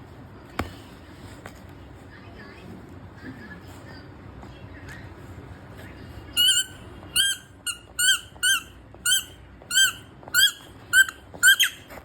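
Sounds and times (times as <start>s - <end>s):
squeaky toy ball squeaking: 6.4s - 12.0s.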